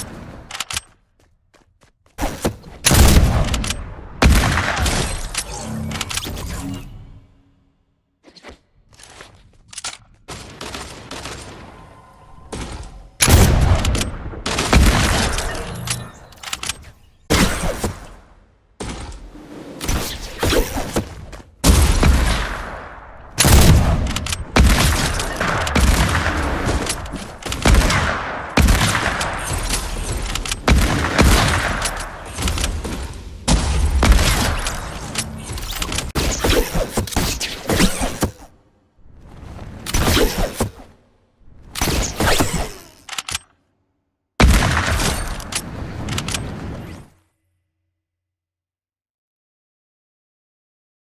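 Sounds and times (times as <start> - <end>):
rifle shots echoing: 22.0 - 32.7.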